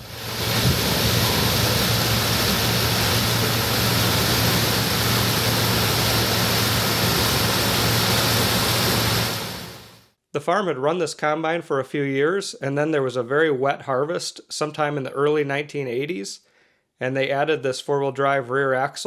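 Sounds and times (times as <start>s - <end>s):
threshing machinery rushing: 0.0s - 9.5s
combine harvester engine hum: 0.0s - 9.6s.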